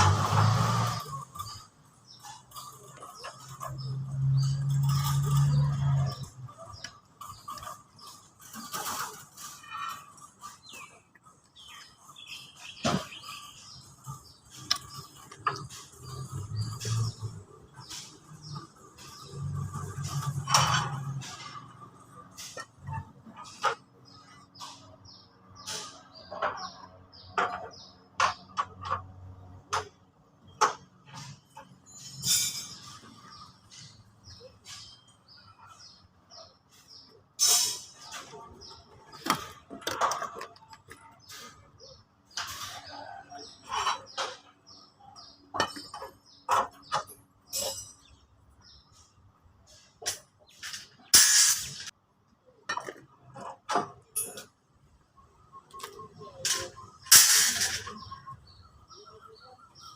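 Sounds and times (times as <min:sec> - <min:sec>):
scraping or rustling: 0:00.0 - 0:23.8
tools clinking and knocking: 0:26.3 - 0:34.0, 0:45.4 - 0:48.2, 0:52.7 - 0:54.6, 0:55.7 - 0:58.2.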